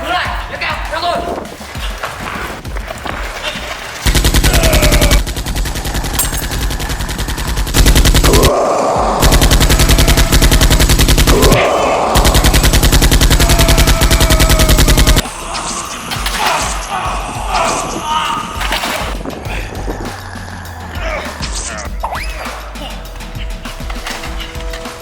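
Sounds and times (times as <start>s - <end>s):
automatic machine-gun fire: 4.1s - 8.6s, 9.2s - 11.6s, 12.2s - 15.2s.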